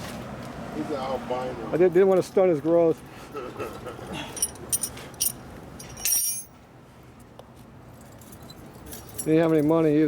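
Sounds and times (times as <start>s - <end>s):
metallic jangle: 4.2s - 6.6s
small metal objects clinking: 4.4s - 6.5s.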